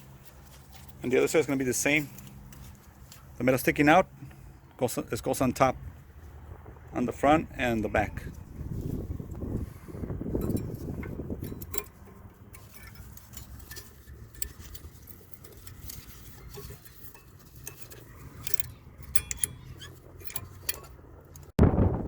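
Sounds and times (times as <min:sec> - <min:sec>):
wind rumble on microphone: 0:05.2 - 0:22.0
metallic clicks of brake pads: 0:08.8 - 0:21.5
loud thump: 0:21.6 - 0:22.0.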